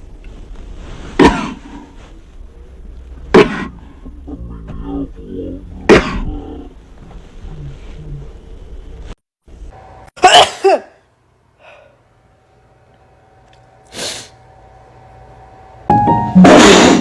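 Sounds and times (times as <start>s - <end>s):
person sneezing: 1.1s - 1.9s, 5.9s - 6.3s, 10.2s - 11.0s.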